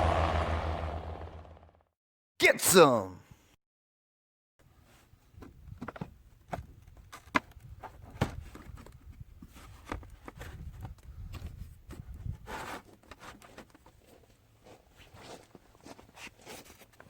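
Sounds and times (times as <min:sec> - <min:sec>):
low rumble: 0:00.0 - 0:01.8.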